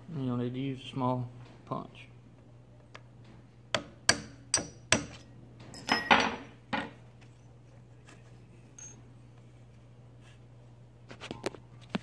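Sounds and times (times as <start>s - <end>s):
hammer tapping metal punch: 3.7s - 7.0s.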